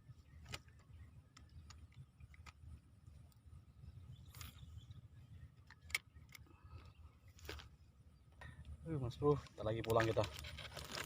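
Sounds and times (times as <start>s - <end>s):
brief rustle: 9.4s - 11.0s.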